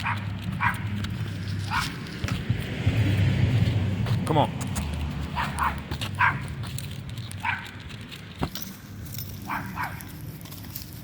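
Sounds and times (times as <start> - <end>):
dog barking: 0.0 - 0.9, 1.7 - 2.0, 5.3 - 6.5, 7.4 - 7.8, 9.4 - 10.1.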